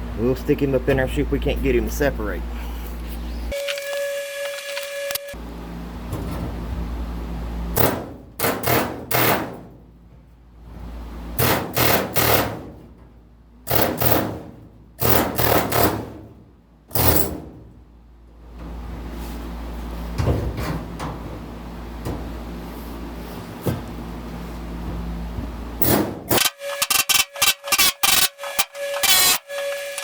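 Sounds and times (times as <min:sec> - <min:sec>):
pneumatic air hammer bursts: 0:16.9 - 0:17.4, 0:25.8 - 0:30.0.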